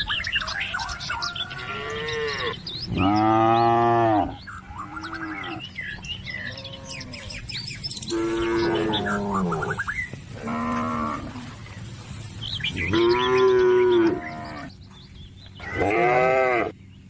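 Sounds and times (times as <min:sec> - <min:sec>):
birds chirping: 0:00.0 - 0:17.0
cattle mooing: 0:00.8 - 0:07.5, 0:08.1 - 0:11.6, 0:12.7 - 0:14.8, 0:15.6 - 0:16.8.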